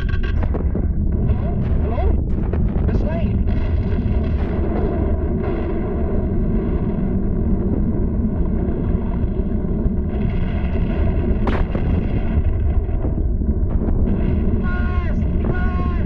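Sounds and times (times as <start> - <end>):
deep volcano rumbling: 0.0 - 16.0
sharp crack: 10.1 - 13.2.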